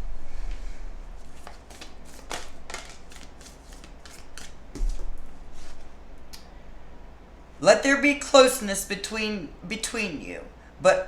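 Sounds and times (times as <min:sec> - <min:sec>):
cards being shuffled: 0:01.2 - 0:05.9.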